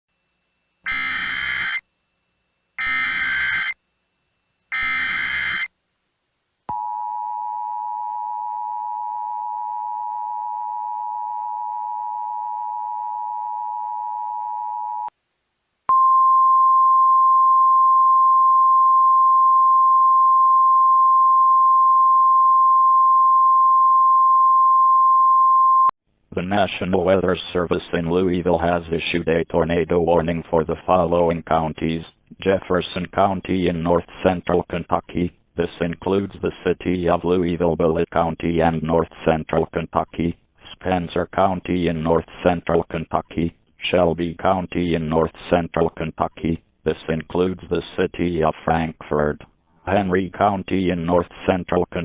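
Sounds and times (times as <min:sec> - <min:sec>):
single steady warning tone: 0:00.8 - 0:01.8, 0:02.8 - 0:03.8, 0:04.7 - 0:05.7
digital header data bursts: 0:00.9 - 0:01.8, 0:02.8 - 0:03.8, 0:04.7 - 0:05.7
two-tone attention signal: 0:00.9 - 0:01.8, 0:02.8 - 0:03.8, 0:04.7 - 0:05.7.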